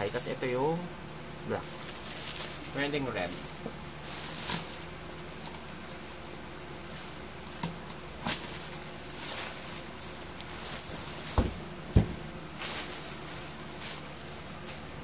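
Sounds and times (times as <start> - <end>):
steady background hiss: 0.0 - 15.0
objects knocking and rustling: 10.6 - 14.0.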